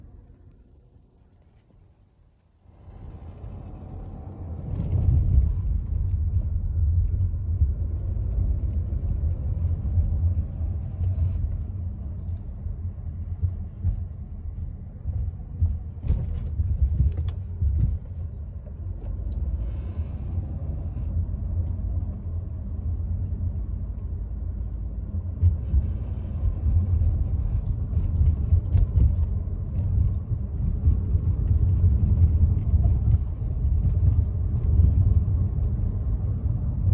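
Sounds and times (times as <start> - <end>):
car cabin low rumble: 0.0 - 36.9.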